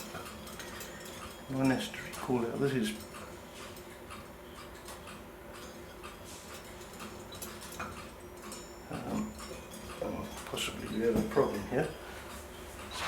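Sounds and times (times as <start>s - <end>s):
clock ticking: 7.8s - 13.0s.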